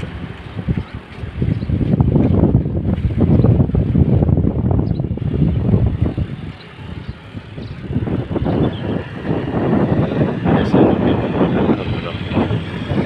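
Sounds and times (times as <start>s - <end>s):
vehicle running on road: 0.0s - 13.0s
wind buffeting microphone: 0.0s - 13.0s.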